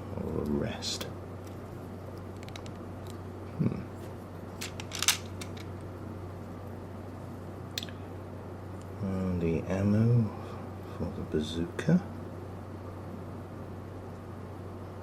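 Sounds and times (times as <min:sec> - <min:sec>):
steady low hum: 0:00.0 - 0:15.0
plastic parts clicking: 0:04.6 - 0:05.7.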